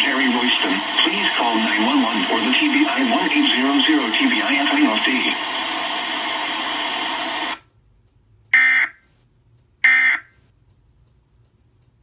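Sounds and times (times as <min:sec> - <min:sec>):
loud steady tone: 0:00.0 - 0:07.6, 0:08.5 - 0:09.0, 0:09.8 - 0:10.4.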